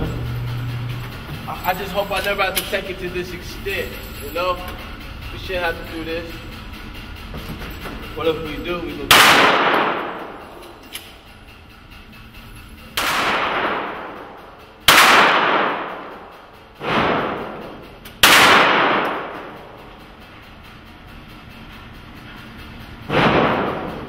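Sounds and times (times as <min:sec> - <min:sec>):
handgun shots echoing: 0:09.1 - 0:10.3, 0:13.0 - 0:14.2, 0:14.9 - 0:16.0, 0:16.8 - 0:19.4.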